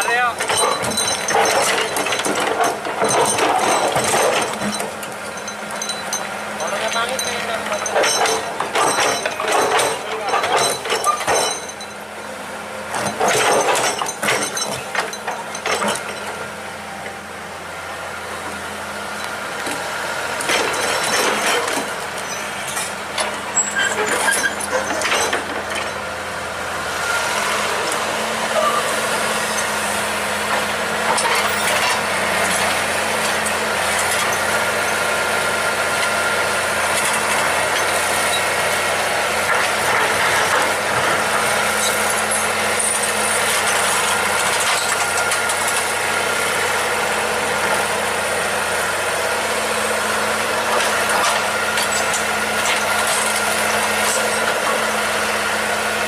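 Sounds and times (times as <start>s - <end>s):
machine clanks and knocks: 0.0s - 12.0s, 12.9s - 16.4s, 20.4s - 26.0s, 39.4s - 45.9s
excavator diesel engine: 0.0s - 56.0s.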